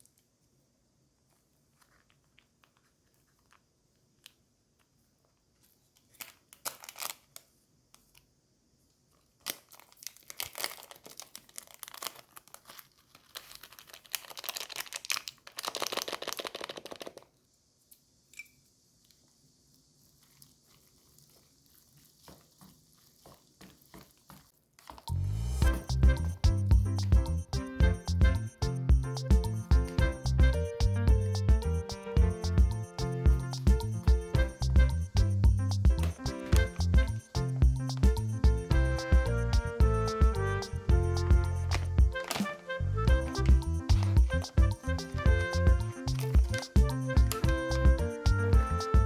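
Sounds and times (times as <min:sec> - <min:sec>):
food wrapper tearing and crinkling: 0:05.9 - 0:08.2, 0:09.2 - 0:17.4, 0:41.7 - 0:42.7
packaging clicks and rustles: 0:05.9 - 0:08.2, 0:09.2 - 0:17.4, 0:41.7 - 0:42.7.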